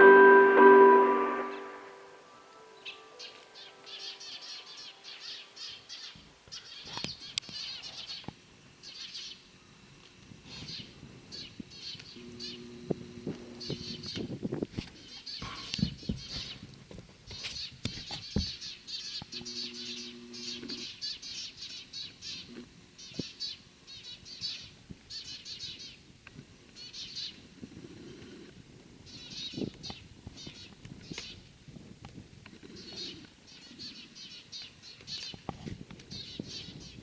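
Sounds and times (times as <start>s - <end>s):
small birds chirping: 3.3s - 9.8s, 29.1s - 31.5s, 32.5s - 37.0s.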